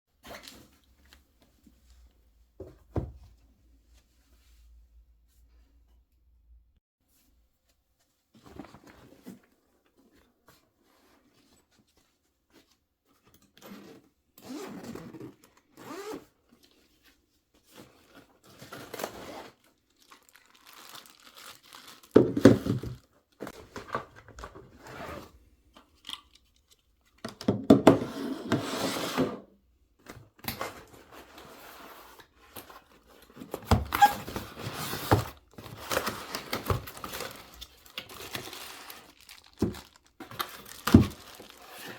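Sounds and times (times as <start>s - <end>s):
packaging tearing and crinkling: 19.9s - 22.2s, 35.1s - 41.9s.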